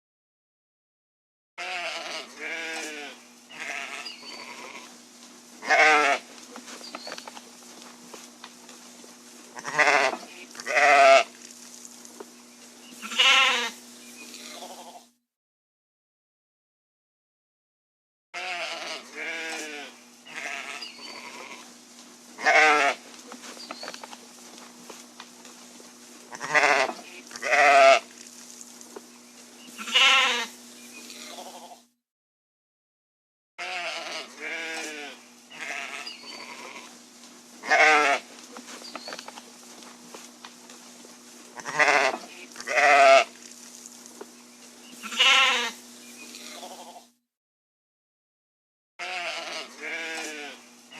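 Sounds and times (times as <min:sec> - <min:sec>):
sheep bleating: 0:01.6 - 0:04.9, 0:05.6 - 0:06.3, 0:09.6 - 0:11.3, 0:13.0 - 0:13.8, 0:14.5 - 0:15.1, 0:18.4 - 0:21.7, 0:22.4 - 0:23.1, 0:26.3 - 0:28.1, 0:29.8 - 0:30.6, 0:31.2 - 0:31.8, 0:33.6 - 0:36.9, 0:37.6 - 0:38.3, 0:41.6 - 0:43.3, 0:45.0 - 0:45.8, 0:46.5 - 0:47.1, 0:49.0 - 0:50.6
steady low hum: 0:02.3 - 0:15.0, 0:19.0 - 0:31.8, 0:34.2 - 0:47.0.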